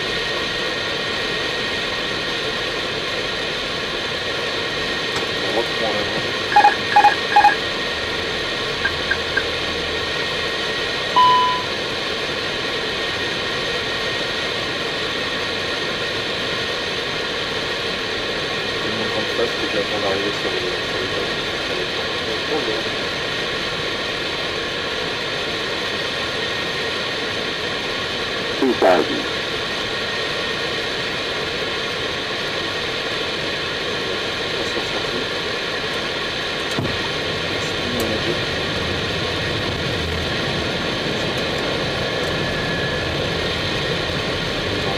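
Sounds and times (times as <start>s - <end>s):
airflow and engine noise: 0.0s - 44.9s
faint steady tones: 5.5s - 7.6s, 8.8s - 9.8s, 11.2s - 11.8s
short electronic tone: 6.5s - 7.6s, 11.2s - 11.8s.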